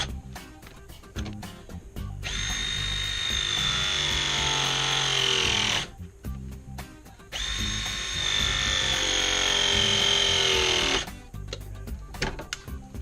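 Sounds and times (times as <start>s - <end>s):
press tool motor whine: 2.2s - 5.9s, 7.4s - 11.1s.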